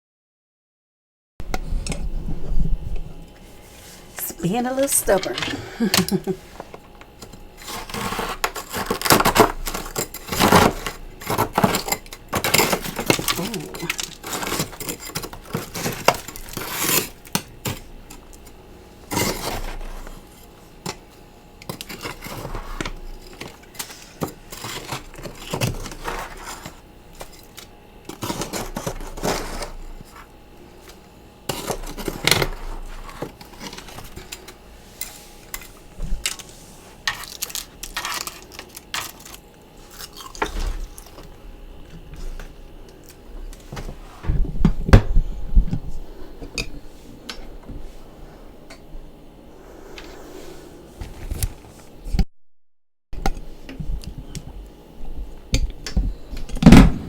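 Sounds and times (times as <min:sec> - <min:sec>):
freezer frost crunching: 0:03.8 - 0:44.0.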